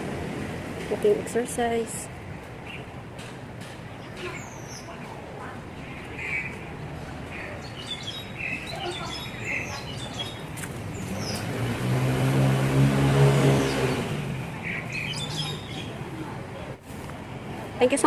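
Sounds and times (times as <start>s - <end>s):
small birds chirping: 3.9s - 11.8s, 13.6s - 16.4s
vehicle passing by: 8.7s - 18.0s.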